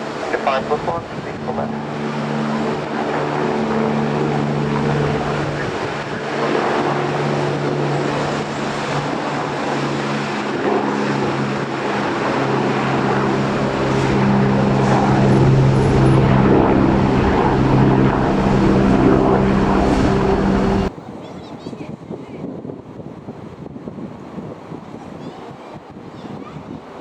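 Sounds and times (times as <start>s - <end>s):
aircraft engines droning: 0.0s - 20.9s
wind on microphone: 0.0s - 27.0s.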